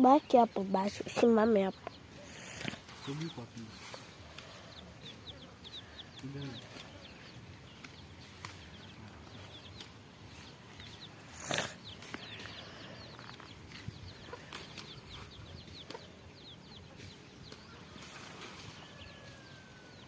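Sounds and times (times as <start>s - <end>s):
birds chirping: 0.0s - 20.0s
rustle: 2.3s - 4.6s, 16.9s - 20.0s.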